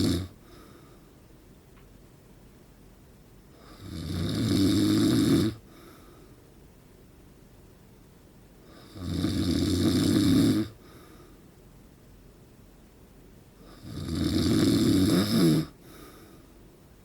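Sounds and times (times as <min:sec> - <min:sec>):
man snoring: 0:00.0 - 0:00.4, 0:03.6 - 0:05.6, 0:08.7 - 0:10.8, 0:13.6 - 0:15.8
faint short breath: 0:00.4 - 0:01.2, 0:05.7 - 0:06.4, 0:10.8 - 0:11.5, 0:15.8 - 0:16.6.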